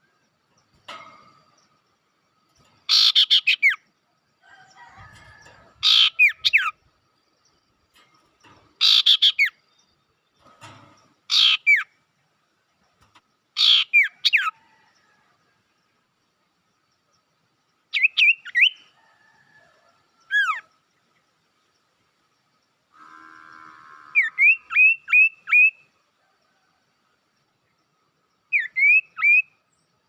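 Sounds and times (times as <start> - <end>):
bird calls buzzy and whistled: 28.5 - 29.6.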